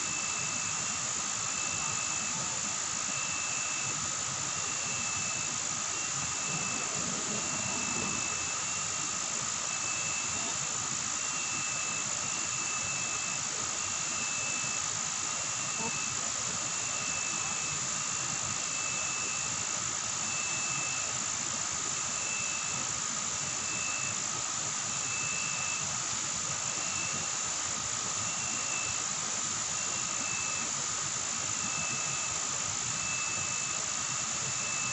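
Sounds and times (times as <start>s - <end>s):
insects buzzing: 0.0s - 19.5s.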